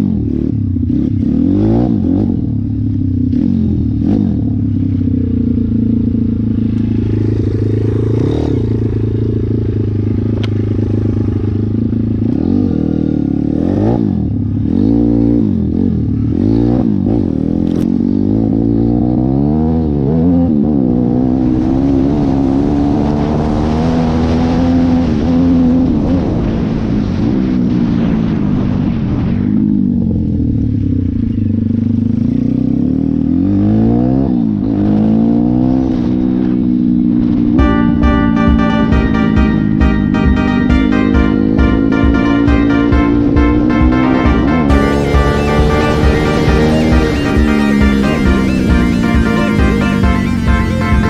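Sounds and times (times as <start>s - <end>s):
motorbike engine revving: 0.0s - 19.7s, 41.6s - 51.0s.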